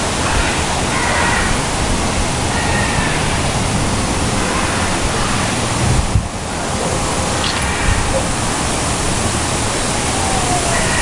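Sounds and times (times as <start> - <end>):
storm wind buffeting microphone: 3.4 - 9.5.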